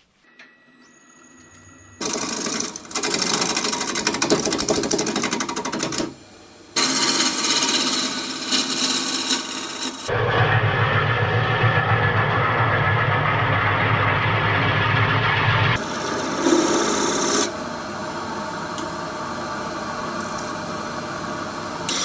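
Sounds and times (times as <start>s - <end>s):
machine low hum: 0.0s - 5.1s, 9.9s - 22.0s
woodworking machine rattling: 2.0s - 6.2s, 6.8s - 10.1s.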